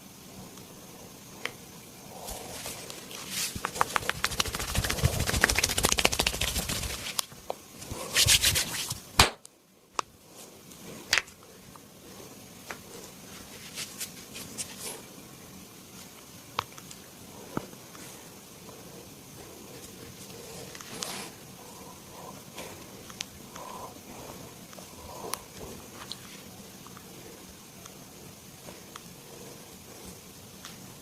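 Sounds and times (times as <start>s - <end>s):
hands rubbing skin: 2.3s - 7.2s, 7.8s - 9.0s, 13.3s - 15.0s.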